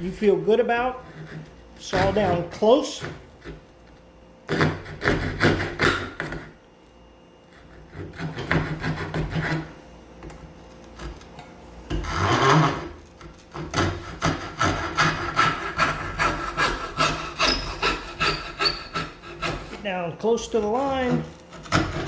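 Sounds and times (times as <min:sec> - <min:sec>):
hand saw cutting wood: 0:00.8 - 0:03.6, 0:04.5 - 0:06.6, 0:07.6 - 0:09.7, 0:11.9 - 0:20.0, 0:20.6 - 0:22.0.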